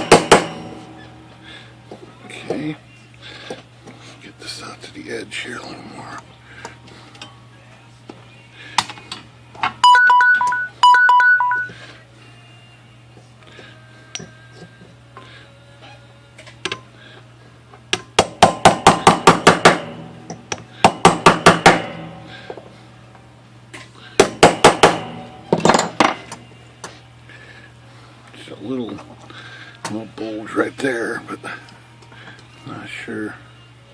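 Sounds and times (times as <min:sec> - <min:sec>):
rapid hammer blows on metal: 0:00.0 - 0:00.8, 0:18.2 - 0:20.1, 0:20.8 - 0:22.3, 0:24.2 - 0:26.1
short ringing tones: 0:09.8 - 0:11.8.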